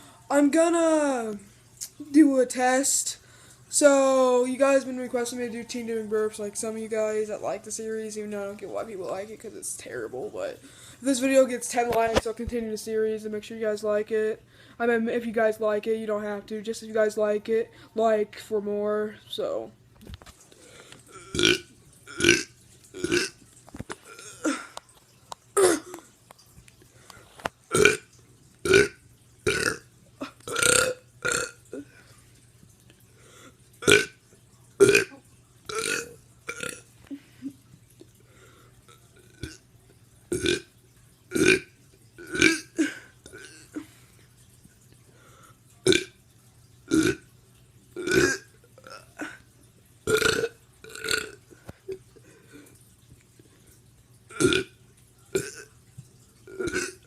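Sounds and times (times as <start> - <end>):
person burping: 21.1 - 23.4, 24.0 - 24.8, 25.6 - 26.1, 27.7 - 28.1, 28.7 - 31.9, 33.8 - 34.2, 34.8 - 37.5, 40.3 - 40.6, 41.3 - 43.9, 45.9 - 46.1, 46.9 - 47.2, 48.0 - 49.4, 50.1 - 52.1, 54.3 - 54.7, 55.4 - 55.7, 56.5 - 57.0.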